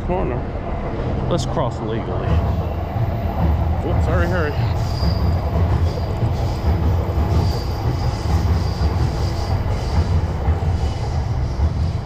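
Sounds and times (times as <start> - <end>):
passing train rumble: 0.0 - 12.0
high wheel squeal: 2.4 - 12.0.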